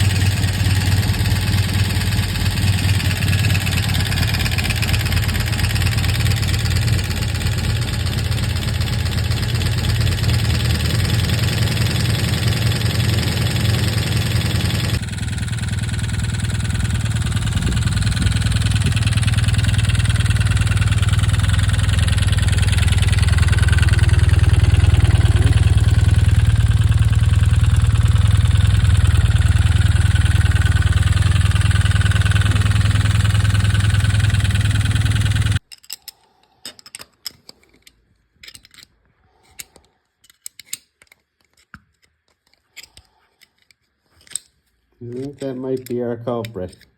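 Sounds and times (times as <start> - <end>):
motorcycle engine idling with knocking: 0.0 - 35.6.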